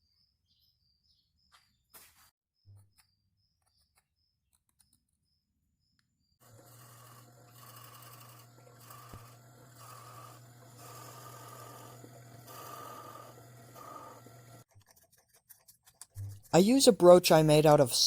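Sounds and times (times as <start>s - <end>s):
drill boring into wood: 6.4s - 14.6s.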